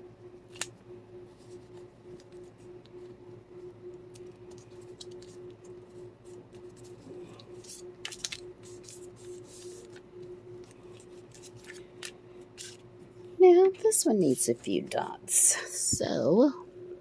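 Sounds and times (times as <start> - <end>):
faint hum: 0.0 - 17.0
paper rustling and tapping: 4.1 - 12.8.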